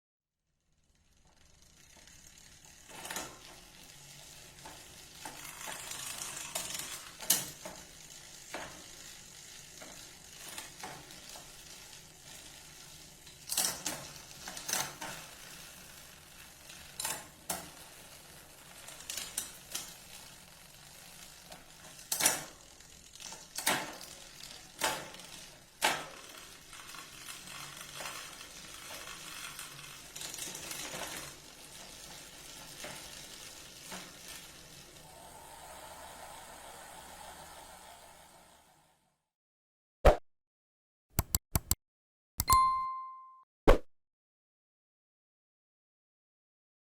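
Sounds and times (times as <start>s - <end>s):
bicycle chain hissing over sprockets: 0.8s - 39.0s.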